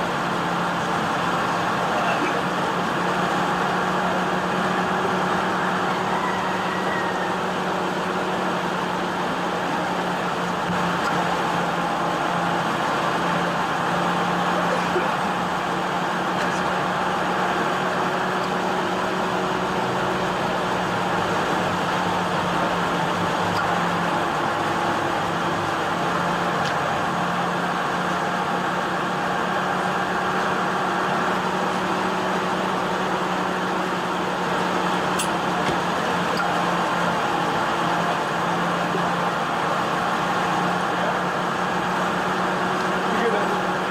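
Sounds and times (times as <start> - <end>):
engine humming: 0.0 - 43.9
road traffic noise: 0.0 - 43.9.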